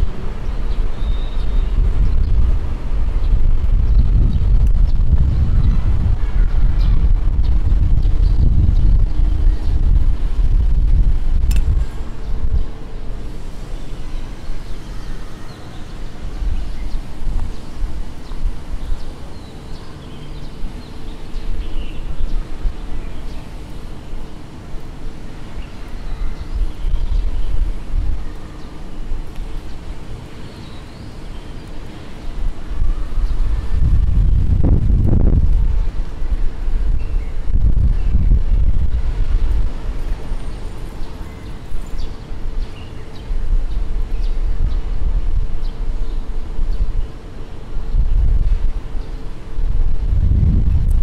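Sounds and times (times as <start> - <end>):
small birds chirping: 0.0 - 2.5, 11.5 - 34.5, 35.5 - 49.5
low uneven rumble: 0.0 - 30.5, 31.6 - 51.0.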